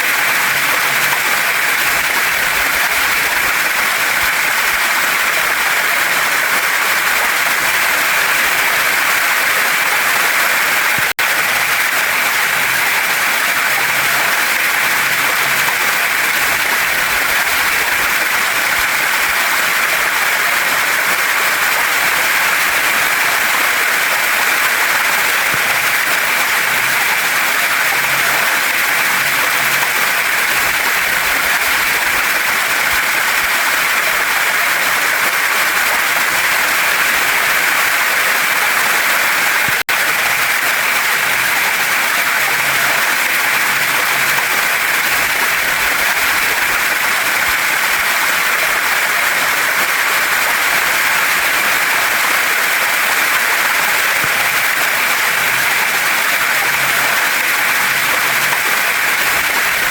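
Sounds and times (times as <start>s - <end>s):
water rushing over rocks: 0.0s - 59.9s.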